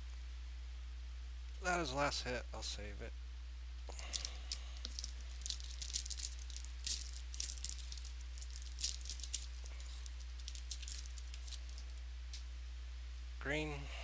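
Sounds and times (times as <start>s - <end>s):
low electrical hum: 0.0s - 14.0s
card wrappers crinkling: 3.9s - 12.0s.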